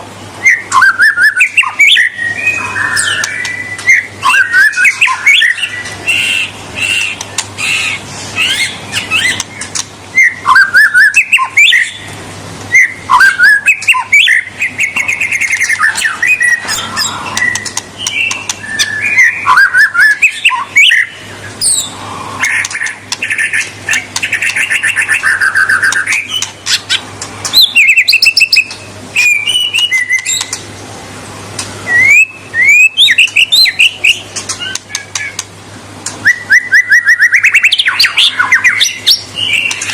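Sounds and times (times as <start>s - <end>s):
bird singing varied song: 0.0s - 39.9s.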